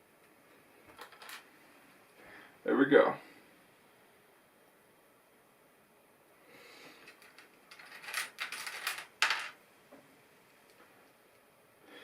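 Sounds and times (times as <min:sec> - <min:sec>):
plastic bricks clattering: 0:01.0 - 0:01.4, 0:07.0 - 0:09.6.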